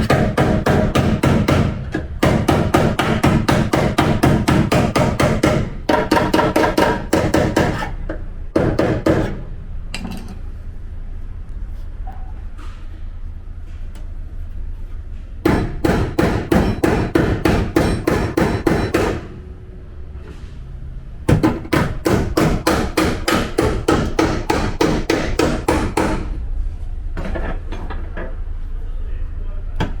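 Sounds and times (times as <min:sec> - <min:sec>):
hammer striking steel panel: 0:00.0 - 0:07.9, 0:15.4 - 0:19.4, 0:21.3 - 0:26.4.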